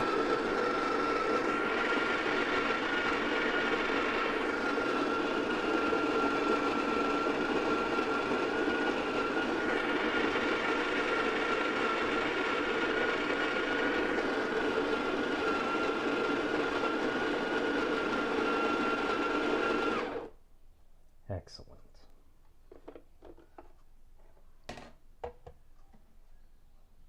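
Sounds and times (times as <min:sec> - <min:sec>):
coffee grinder running: 0:00.0 - 0:20.4.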